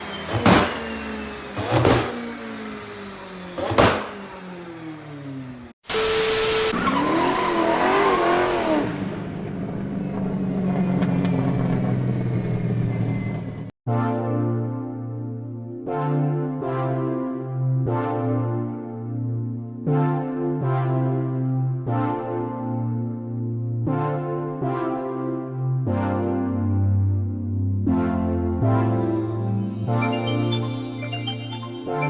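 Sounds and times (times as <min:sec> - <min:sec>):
loud exhaust bangs: 0:00.0 - 0:02.5, 0:03.6 - 0:04.9
car engine revving: 0:00.0 - 0:12.9
music: 0:13.9 - 0:32.0.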